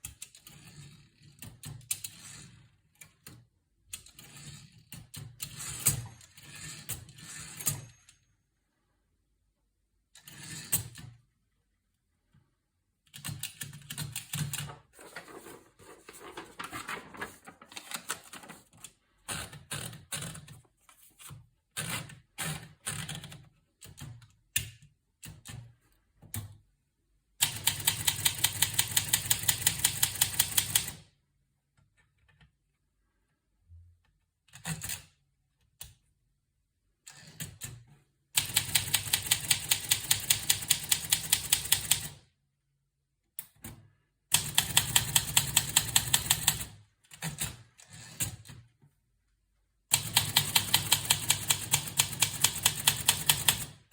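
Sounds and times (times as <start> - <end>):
typewriter keys striking: 50.0 - 53.7.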